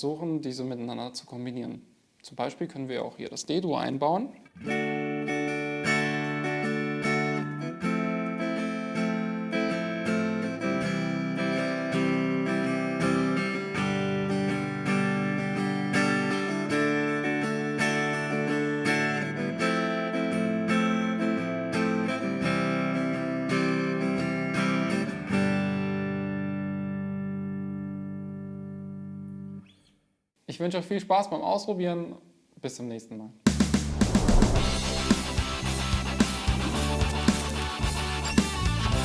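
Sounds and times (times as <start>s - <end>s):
guitar strumming chords: 4.6s - 29.5s, 34.7s - 39.0s.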